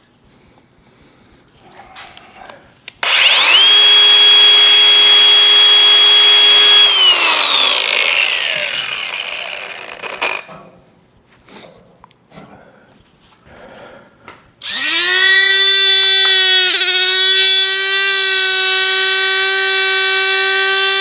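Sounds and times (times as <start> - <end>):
power tool whining: 3.0 - 10.5, 14.6 - 21.0.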